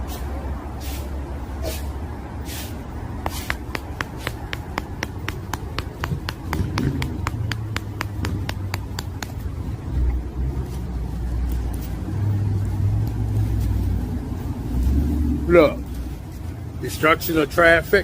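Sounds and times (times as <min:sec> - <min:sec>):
low engine hum: 0:00.0 - 0:17.0
car indicator ticking: 0:03.5 - 0:09.4.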